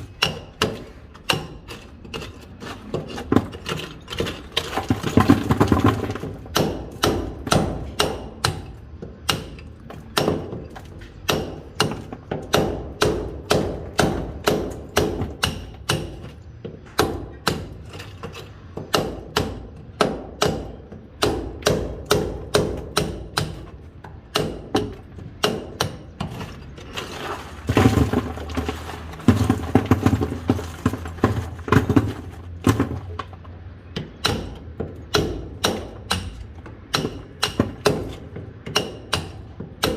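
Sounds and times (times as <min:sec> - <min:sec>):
hammer and chisel on stone: 0:00.0 - 0:26.9, 0:29.3 - 0:39.9.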